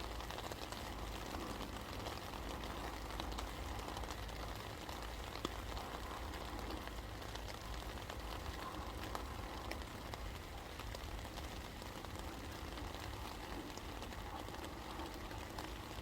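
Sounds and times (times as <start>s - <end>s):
raindrops ticking: 0.0s - 16.0s
steady rain: 0.0s - 16.0s.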